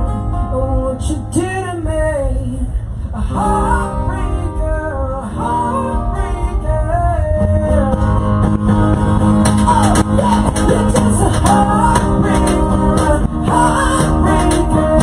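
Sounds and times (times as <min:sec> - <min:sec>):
bass guitar: 0:00.0 - 0:15.0
electric guitar: 0:00.0 - 0:15.0
person singing: 0:00.0 - 0:15.0
drums: 0:05.3 - 0:15.0.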